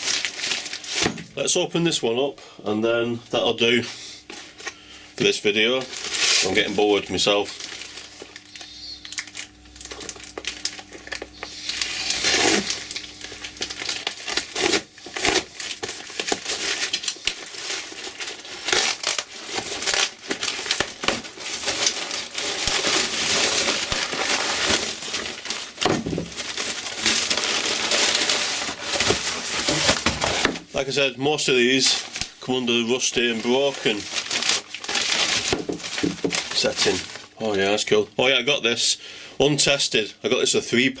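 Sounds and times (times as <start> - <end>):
packaging crumpling and rustling: 0.0 - 1.2, 3.7 - 38.0
packaging tearing: 0.0 - 1.2, 5.6 - 30.7, 31.7 - 37.7.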